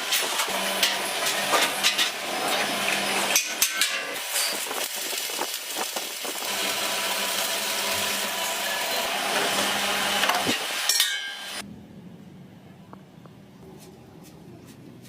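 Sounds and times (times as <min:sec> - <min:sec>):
harsh metalworking noise: 0:00.0 - 0:11.6.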